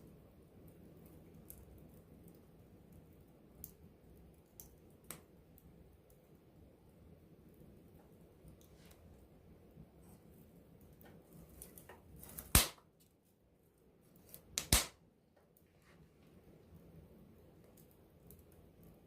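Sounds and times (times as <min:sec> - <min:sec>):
burning wood popping: 0:00.0 - 0:06.4, 0:10.2 - 0:13.1, 0:14.1 - 0:15.6, 0:17.4 - 0:19.0
campfire crackling: 0:00.0 - 0:19.0.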